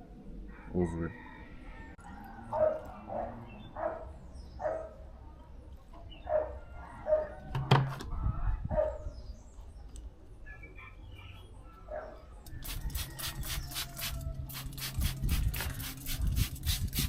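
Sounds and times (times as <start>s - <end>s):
dog barking: 2.5s - 5.0s, 6.2s - 7.4s, 8.7s - 9.0s, 11.8s - 12.2s.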